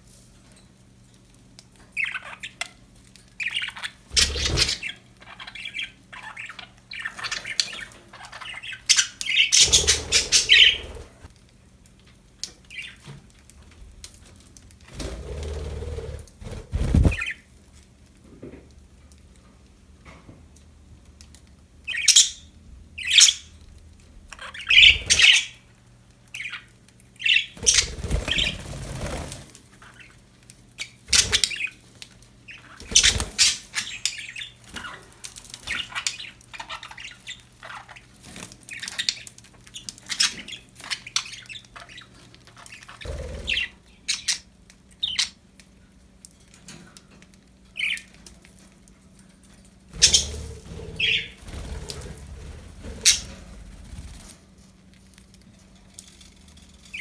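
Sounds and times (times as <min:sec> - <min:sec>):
budgerigars chirping and squawking: 0:02.0 - 0:02.8, 0:03.4 - 0:11.3, 0:15.8 - 0:17.4, 0:21.9 - 0:23.7, 0:24.3 - 0:25.7, 0:26.4 - 0:30.2, 0:30.8 - 0:31.8, 0:32.5 - 0:45.4, 0:50.0 - 0:54.2
wing flapping: 0:04.1 - 0:04.9, 0:09.6 - 0:11.3, 0:14.8 - 0:17.4, 0:27.6 - 0:29.7, 0:32.8 - 0:33.6, 0:43.0 - 0:43.7, 0:49.9 - 0:54.6.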